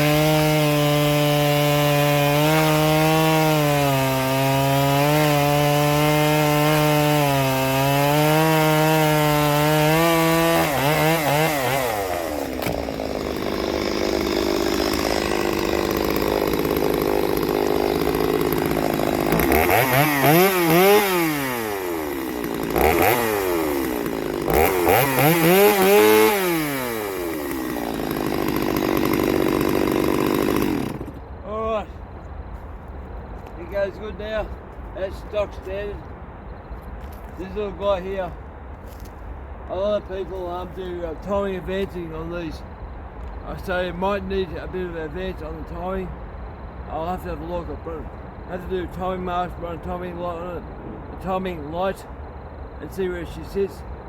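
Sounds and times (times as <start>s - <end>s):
chainsaw revving and idling: 0.0s - 31.2s, 52.8s - 53.9s.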